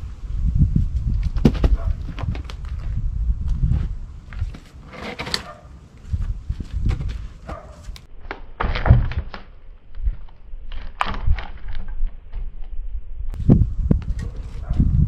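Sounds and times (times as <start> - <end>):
firewood pieces thunking and knocking: 1.1 - 3.0, 6.2 - 12.7.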